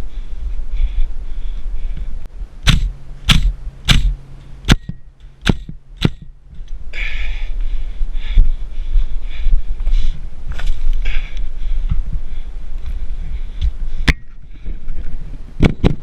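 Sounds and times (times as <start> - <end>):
steady hum: 0.0 - 16.0
wind noise on microphone: 0.0 - 16.0
airsoft gun shots: 2.6 - 6.3.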